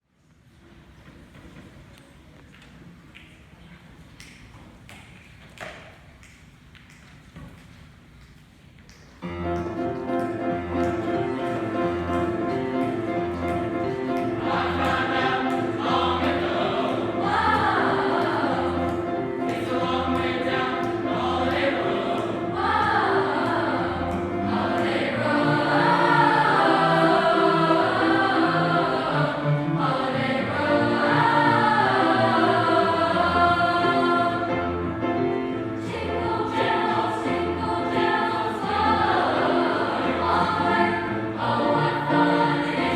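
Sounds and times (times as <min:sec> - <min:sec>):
school choir singing: 0:10.6 - 0:42.9.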